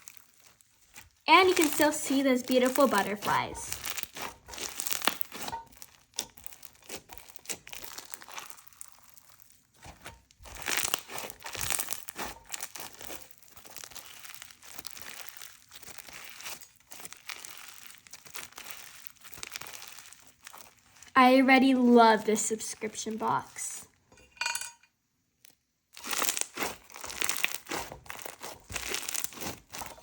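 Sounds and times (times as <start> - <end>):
slime crackling and popping: 0.0 - 21.1, 25.4 - 30.0.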